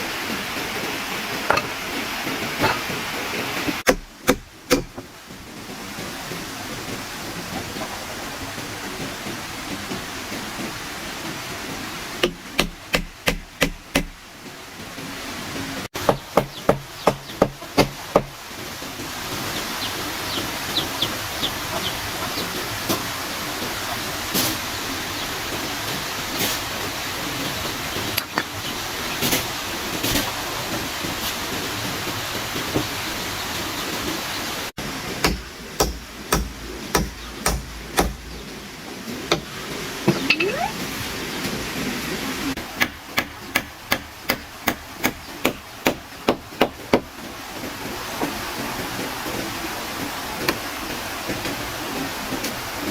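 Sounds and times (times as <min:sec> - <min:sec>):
steady hiss: 0:00.0 - 0:52.9
hand tool sharp blows: 0:03.9 - 0:05.0, 0:35.2 - 0:38.3.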